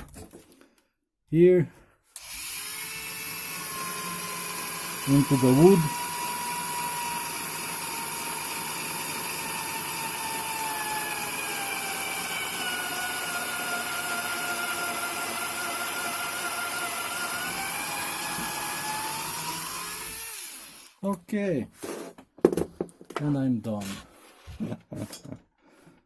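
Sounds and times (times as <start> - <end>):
electric drill drilling into wood: 2.2 - 21.0.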